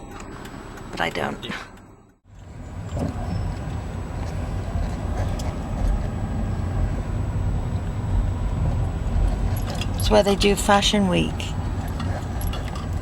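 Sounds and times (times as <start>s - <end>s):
car engine and road noise: 0.0s - 13.0s.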